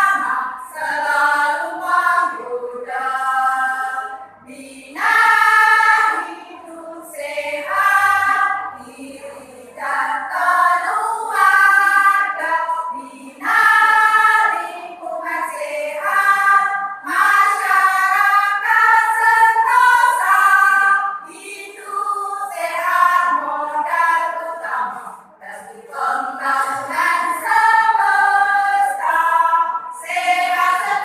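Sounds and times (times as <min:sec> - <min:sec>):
choir singing: 0:00.0 - 0:31.0.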